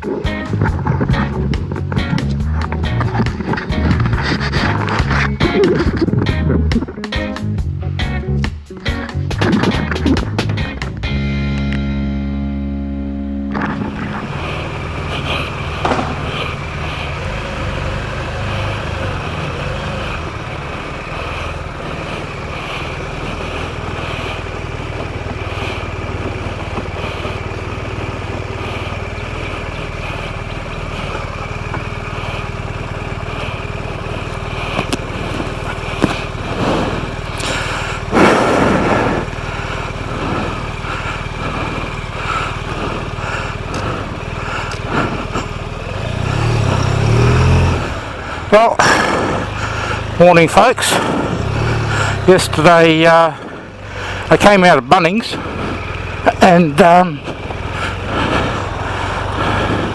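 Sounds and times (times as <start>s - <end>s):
motorcycle engine running: 0.0s - 59.9s
rushing noise: 12.8s - 59.9s.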